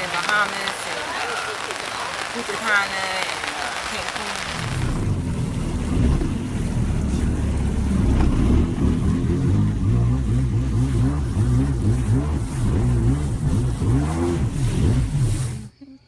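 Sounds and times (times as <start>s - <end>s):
engine revving: 3.4s - 15.7s.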